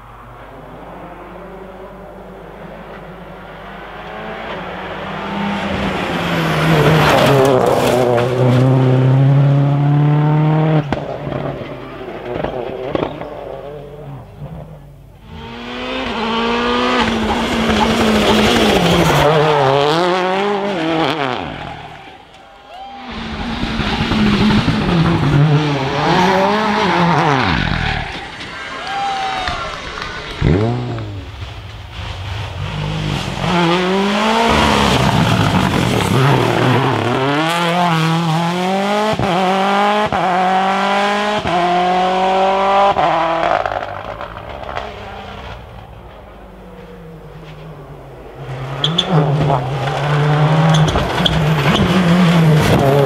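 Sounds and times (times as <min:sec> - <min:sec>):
rally car engines revving past: 0:00.0 - 0:22.4, 0:23.0 - 0:53.0.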